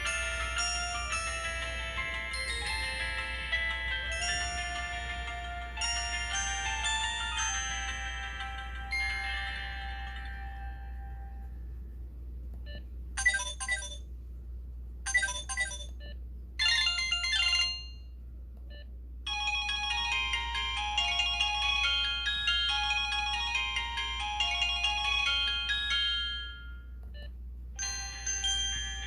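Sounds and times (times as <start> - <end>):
phone ringtone bursts: 0.0 - 11.2, 13.2 - 14.0, 15.1 - 15.9, 16.6 - 18.1, 19.3 - 26.9, 27.8 - 29.0
ringtone melody: 0.0 - 11.5, 13.2 - 14.0, 15.1 - 15.9, 16.6 - 18.0, 19.3 - 26.9, 27.8 - 29.0.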